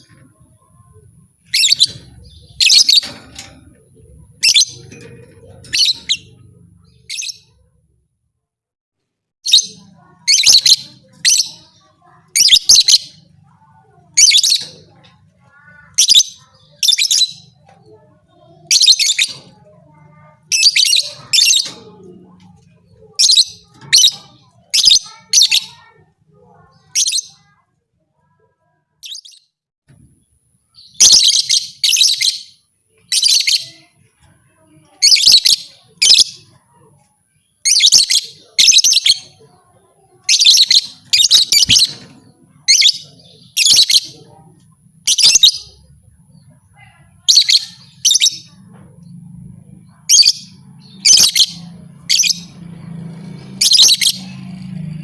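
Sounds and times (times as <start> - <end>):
lovebird chirping: 1.4 - 3.5, 4.4 - 7.6, 30.8 - 33.8, 40.2 - 44.1, 45.0 - 45.9, 49.9 - 54.3.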